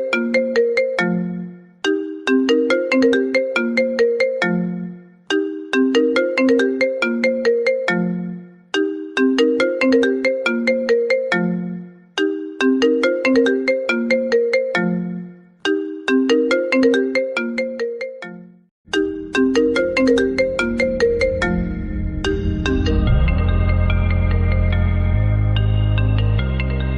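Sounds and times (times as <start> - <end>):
mobile phone ringtone melody: 0.0 - 26.9
low steady drone: 21.2 - 26.2.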